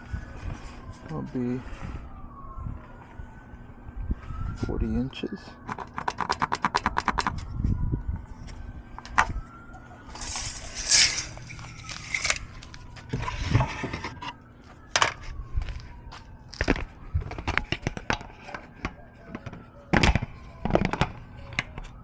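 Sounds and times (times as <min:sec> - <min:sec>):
brief scrape: 0:10.2 - 0:12.4.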